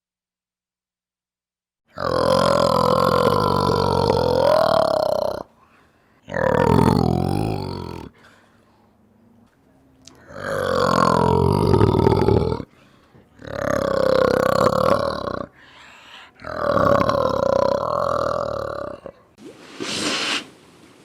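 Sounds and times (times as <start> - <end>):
animal long drawn-out calls: 10.1 - 19.2.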